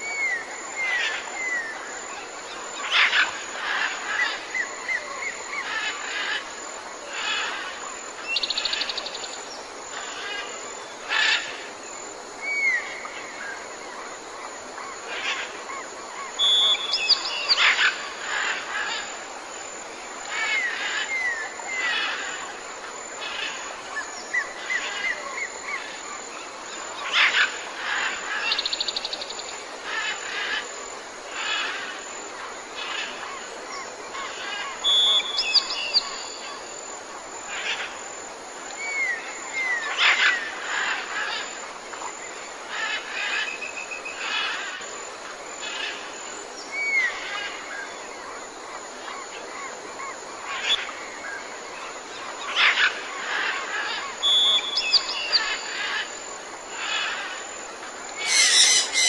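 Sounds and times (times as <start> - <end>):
steady hiss: 0.0 - 59.0
birds calling: 58.1 - 59.0.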